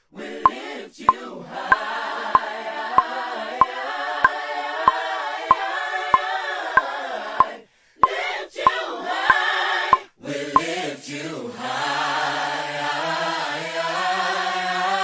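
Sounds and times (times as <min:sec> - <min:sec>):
a cappella group singing: 0:00.0 - 0:15.0
sharp click on each beat: 0:00.4 - 0:10.7.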